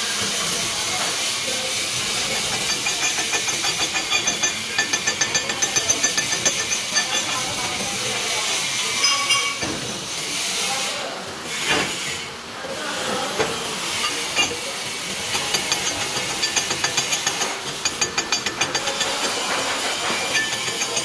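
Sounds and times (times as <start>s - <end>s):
arc welding crackling hiss: 0.0s - 9.0s.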